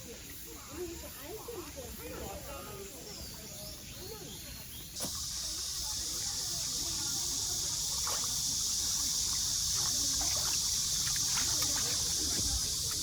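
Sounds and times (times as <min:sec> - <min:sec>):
faint small splashes: 0:04.9 - 0:13.0
stream water over rocks: 0:05.0 - 0:13.0.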